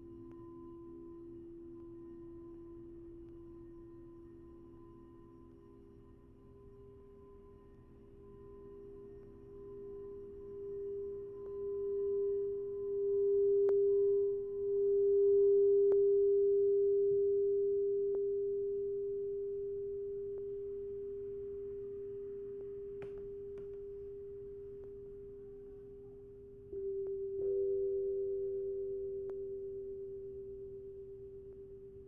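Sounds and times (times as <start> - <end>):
singing bowl ringing: 0.0 - 16.7, 26.7 - 32.0.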